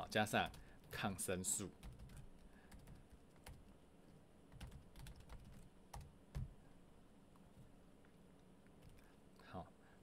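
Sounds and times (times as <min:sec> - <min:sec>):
computer keyboard typing: 0:00.4 - 0:01.0, 0:01.8 - 0:03.7, 0:04.5 - 0:06.5, 0:08.8 - 0:09.0.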